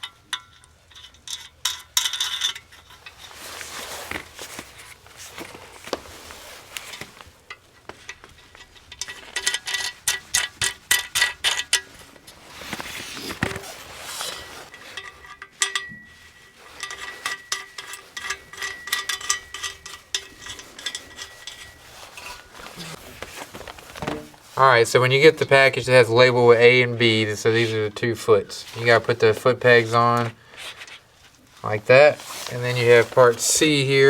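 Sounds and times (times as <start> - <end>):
metal parts clinking: 0.0 - 6.0, 6.7 - 23.0
rustling: 2.1 - 34.0.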